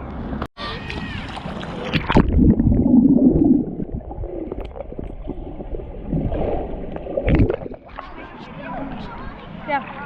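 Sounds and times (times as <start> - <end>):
underwater gurgling and bubbles: 1.4 - 9.0.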